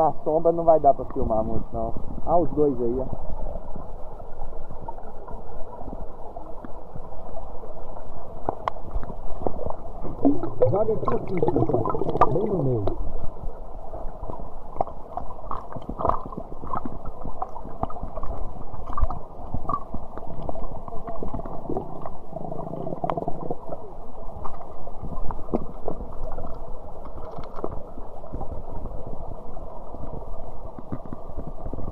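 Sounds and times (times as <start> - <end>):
muffled rumbling water: 0.0 - 31.9
knocks and gurgles: 9.0 - 13.0, 14.8 - 23.7.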